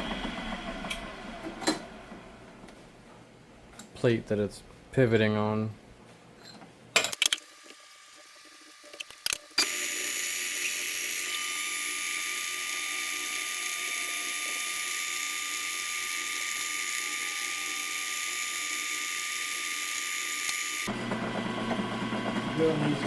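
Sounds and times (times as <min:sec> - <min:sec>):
high-pitched power tool whir: 0:07.4 - 0:23.0.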